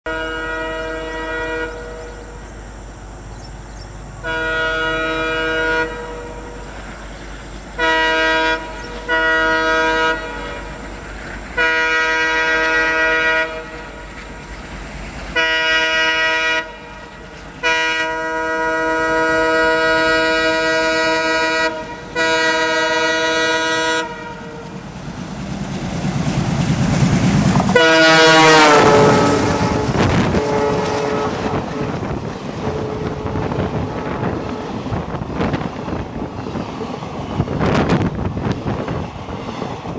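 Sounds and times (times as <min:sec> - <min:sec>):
locomotive horn blasts: 0:00.0 - 0:02.4, 0:04.2 - 0:06.7, 0:07.8 - 0:10.8, 0:11.6 - 0:14.0, 0:15.4 - 0:24.8, 0:27.7 - 0:35.5
train rumble: 0:00.0 - 0:39.9.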